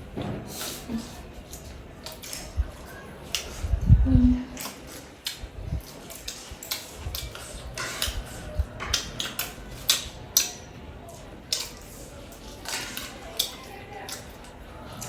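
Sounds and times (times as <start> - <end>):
low humming voice: 3.6 - 4.6
eating clicks and taps: 6.2 - 10.6.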